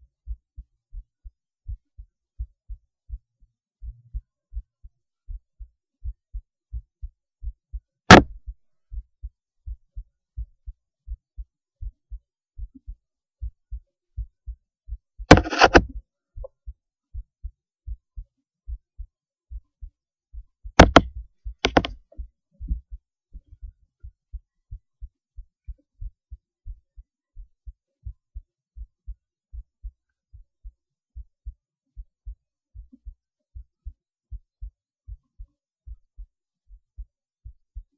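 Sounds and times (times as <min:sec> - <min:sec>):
heartbeat thumps through stethoscope: 0:00.0 - 0:37.9
loud scraping knocks: 0:15.3 - 0:15.9, 0:20.8 - 0:21.9.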